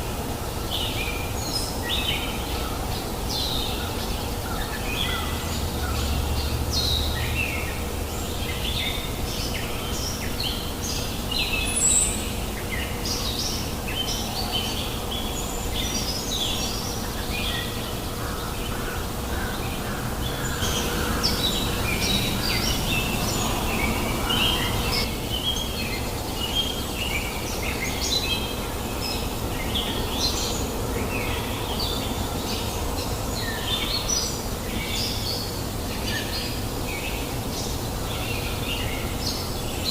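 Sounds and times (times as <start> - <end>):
birds chirping and singing: 0.7 - 39.9
stream flowing: 18.8 - 25.3.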